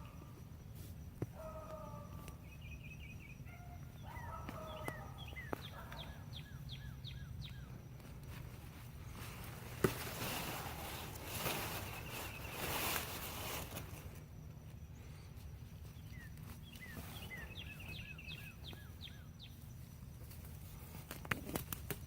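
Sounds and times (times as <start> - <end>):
birds calling: 1.2 - 14.0, 14.9 - 21.0
soil being dug: 7.9 - 14.2.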